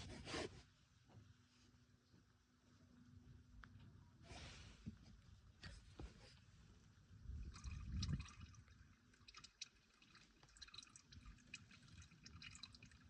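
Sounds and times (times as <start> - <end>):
oil dripping into bucket: 7.3 - 13.0.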